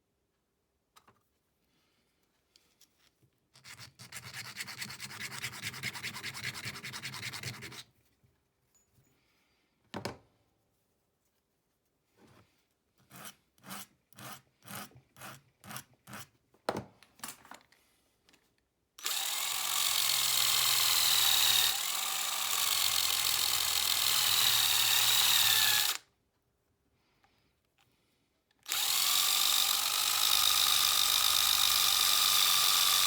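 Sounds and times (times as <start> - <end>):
power tool whining: 19.0 - 26.0, 28.6 - 33.0.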